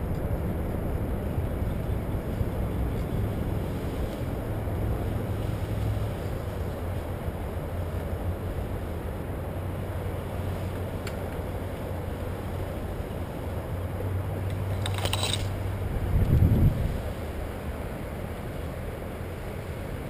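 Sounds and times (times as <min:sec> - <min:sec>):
bicycle rolling rumble: 0:00.0 - 0:20.0
brief rattle: 0:14.8 - 0:15.6
wind gust on microphone: 0:15.4 - 0:20.0.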